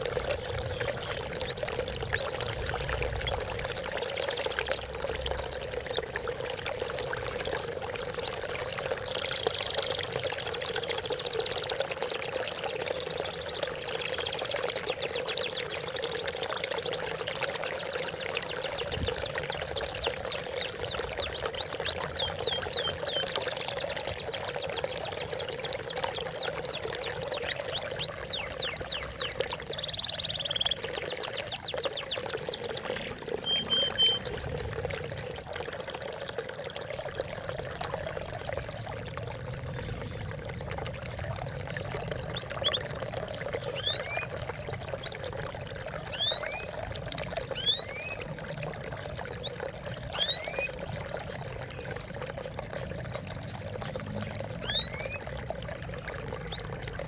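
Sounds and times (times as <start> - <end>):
water trickling and splashing: 0.0 - 57.0
bird chirps: 10.3 - 34.3
bird trilling: 27.5 - 34.3.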